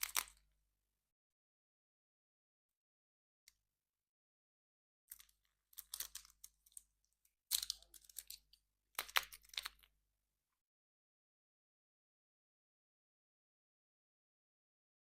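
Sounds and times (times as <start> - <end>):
packaging torn and crinkled: 5.8 - 6.8, 7.5 - 9.8.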